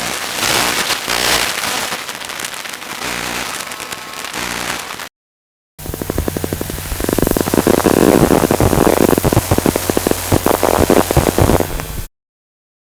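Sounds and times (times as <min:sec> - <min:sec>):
digital glitch crackle and static: 0:00.0 - 0:05.1, 0:05.8 - 0:12.1
low electronic hum: 0:05.8 - 0:12.1.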